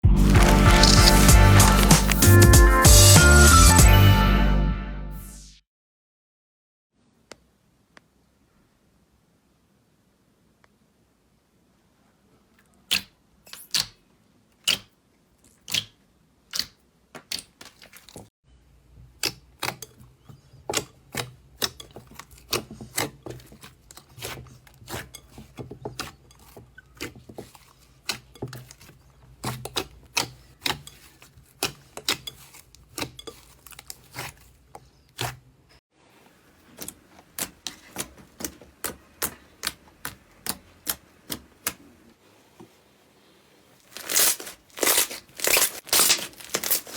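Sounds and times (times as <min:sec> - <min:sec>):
slime clicking and popping: 0:14.6 - 0:14.9, 0:16.5 - 0:17.9.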